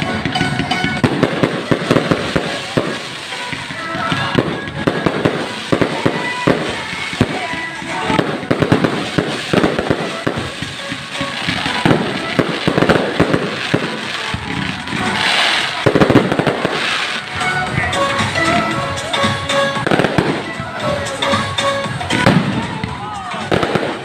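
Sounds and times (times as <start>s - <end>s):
fireworks bangs: 0.0s - 24.0s
fireworks crackling: 0.0s - 24.0s
music: 0.0s - 24.0s.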